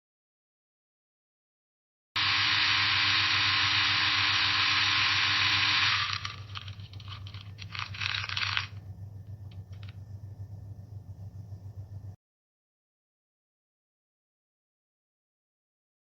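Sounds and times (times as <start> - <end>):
coffee grinder grinding beans: 2.2 - 8.9
low steady hum: 3.6 - 12.2.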